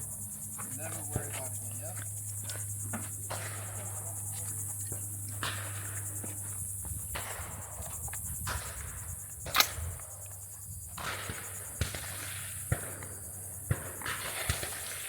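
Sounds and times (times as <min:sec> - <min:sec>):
insects buzzing: 0:00.0 - 0:15.0
sharp gunshot crack: 0:09.4 - 0:10.0, 0:13.7 - 0:15.0.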